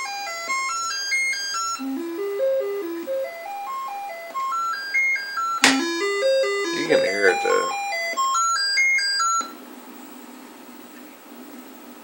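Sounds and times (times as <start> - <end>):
stepped electronic notes: 1.8 - 8.4.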